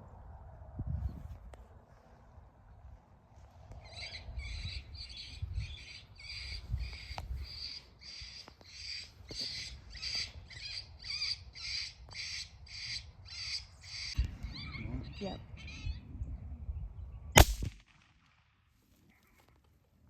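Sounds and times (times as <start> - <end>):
low rumble: 14.1 - 18.0.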